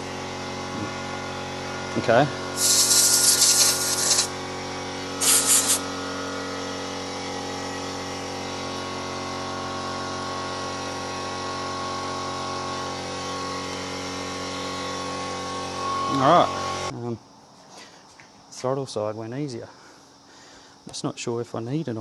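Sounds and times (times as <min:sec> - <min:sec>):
steady mechanical hum: 0:00.0 - 0:22.0
hiss of spray: 0:02.6 - 0:04.3, 0:05.2 - 0:05.9.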